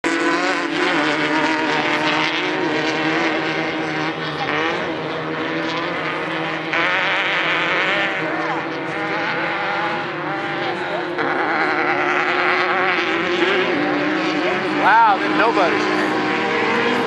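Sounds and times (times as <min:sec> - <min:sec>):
race vehicle engines revving: 0:00.0 - 0:17.0.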